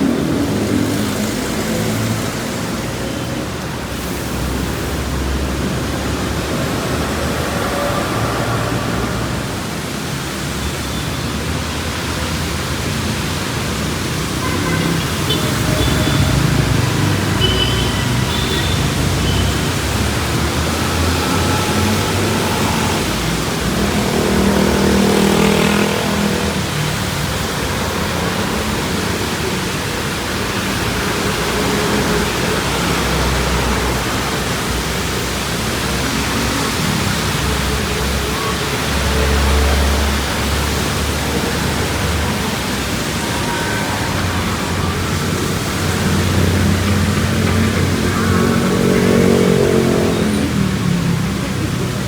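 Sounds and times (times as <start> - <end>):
rain and tyres on wet road: 0.0 - 52.0
traffic passing: 0.0 - 52.0
loud vehicle engine passing: 11.9 - 52.0.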